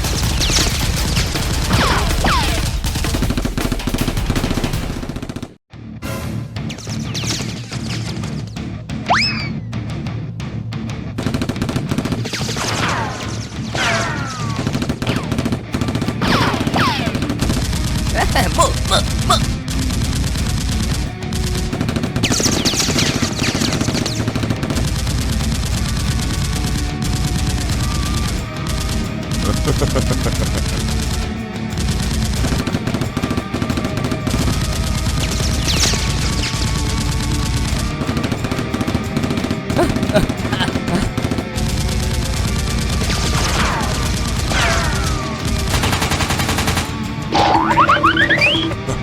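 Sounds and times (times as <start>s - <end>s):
rapid automatic gunfire: 0.0s - 5.6s, 11.2s - 13.0s, 14.4s - 18.1s, 19.7s - 39.6s, 41.2s - 47.2s
falling whistle-like tones: 47.4s - 48.8s.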